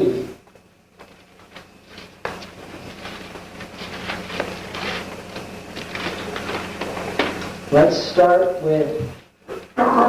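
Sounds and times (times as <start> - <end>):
pages turning: 1.0 - 7.6.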